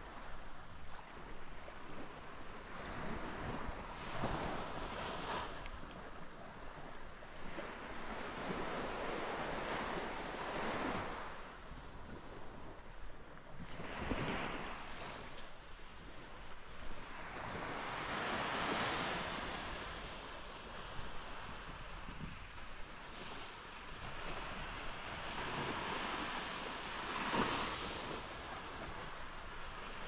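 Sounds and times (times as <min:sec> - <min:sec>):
wind on microphone: 0:00.0 - 0:30.0
sea waves washing onto beach: 0:13.6 - 0:30.0.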